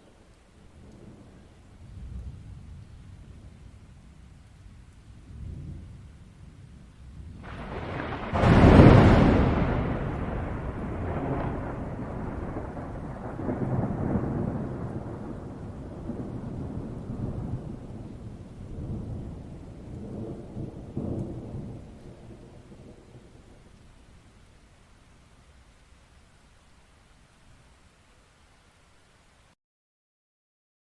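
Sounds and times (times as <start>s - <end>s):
rolling thunder: 5.2s - 24.2s.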